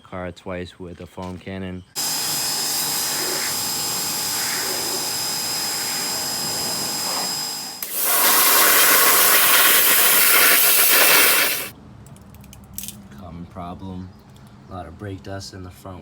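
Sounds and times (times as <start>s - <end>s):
high motor whine: 2.0s - 11.7s
pressure washer spraying: 2.0s - 11.7s.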